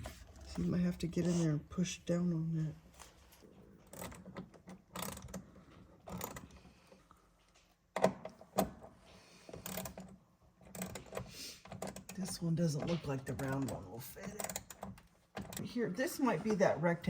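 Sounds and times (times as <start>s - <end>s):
tools and hardware clicking: 3.8s - 6.6s, 9.5s - 15.7s.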